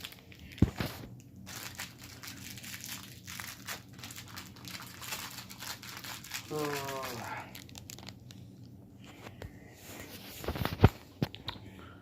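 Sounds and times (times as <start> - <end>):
plastic wrapper crinkling: 0.0 - 8.8.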